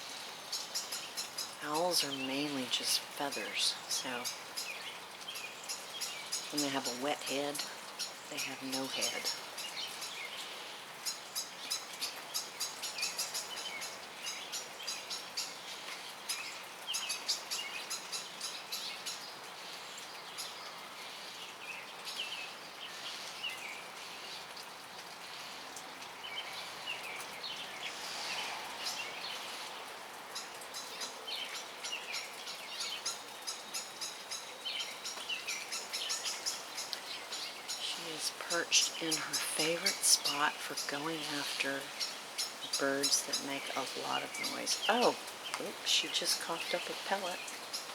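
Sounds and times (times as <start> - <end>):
small birds chirping: 0.0 - 47.9
steady background hiss: 0.0 - 47.9.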